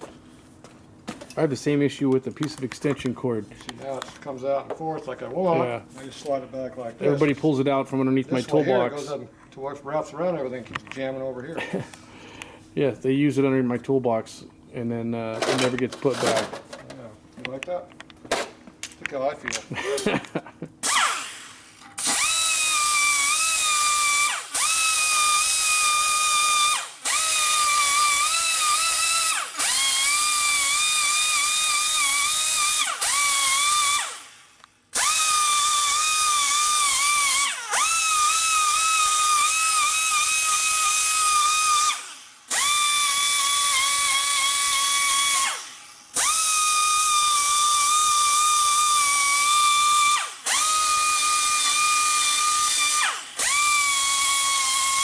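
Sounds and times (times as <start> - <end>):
handheld power tool whining: 20.8 - 55.0.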